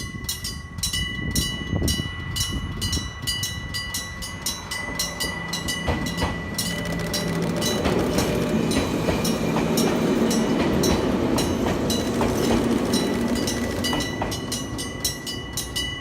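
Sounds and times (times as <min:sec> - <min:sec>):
electric train rumbling: 0:00.0 - 0:16.0
wheel clacks over rail joints: 0:04.4 - 0:15.8.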